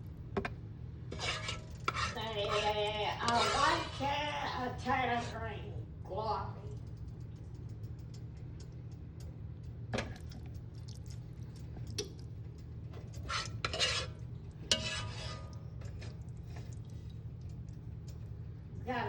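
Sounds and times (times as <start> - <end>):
steady low hum: 0.0 - 19.0
utensils clinking and scraping: 1.1 - 4.0, 13.0 - 16.2.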